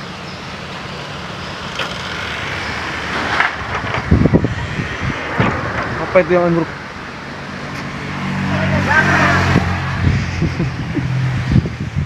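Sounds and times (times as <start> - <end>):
storm wind blowing: 3.0 - 7.1, 9.3 - 12.0.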